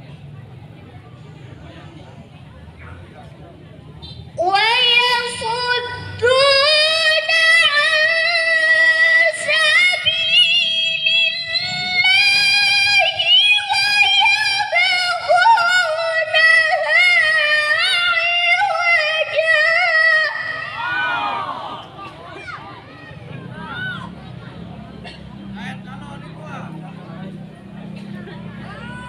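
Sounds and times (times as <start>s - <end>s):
woman reciting melodically: 4.4s - 20.8s.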